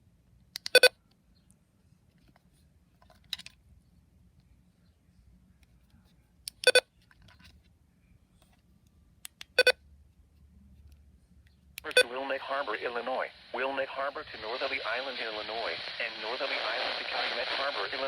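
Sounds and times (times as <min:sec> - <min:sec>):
electronic keypad beeps: 0:06.6 - 0:06.8, 0:09.5 - 0:09.8.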